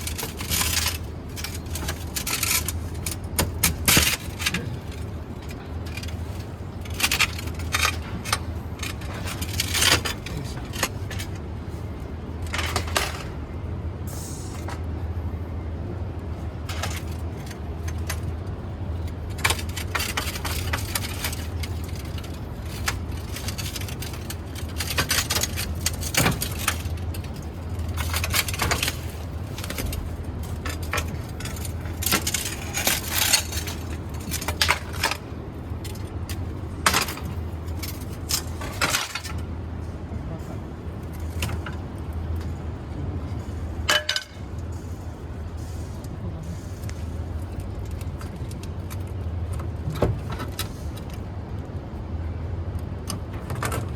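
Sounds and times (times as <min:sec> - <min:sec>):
clinks and scrapes on window glass: 0:00.0 - 0:11.5, 0:19.2 - 0:39.4
steady low hum: 0:00.0 - 0:53.9.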